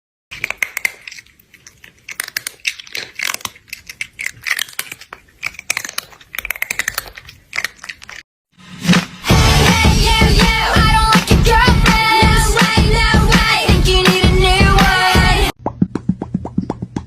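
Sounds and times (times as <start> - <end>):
crunchy chewing: 0.3 - 8.3.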